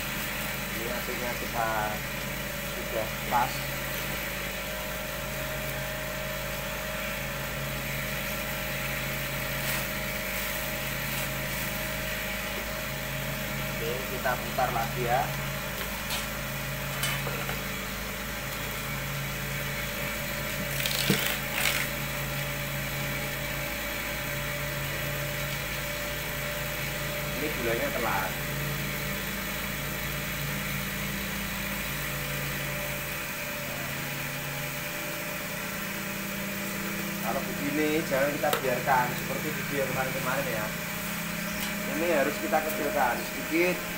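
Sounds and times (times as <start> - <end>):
gas burner hiss: 0.0 - 18.8
cotton candy machine motor hum: 0.0 - 43.9
gas burner hissing: 0.0 - 43.9.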